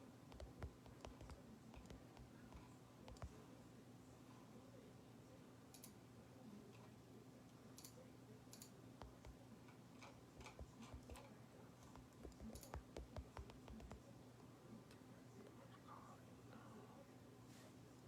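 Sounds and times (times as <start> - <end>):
low steady hum: 0.0 - 18.0
soft clicks: 0.3 - 3.4, 5.7 - 6.0, 7.5 - 14.0.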